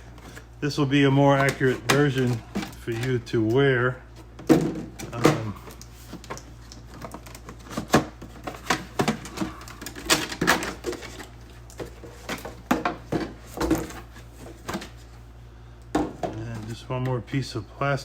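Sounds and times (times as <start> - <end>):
stiff plastic crackling: 1.3 - 12.7.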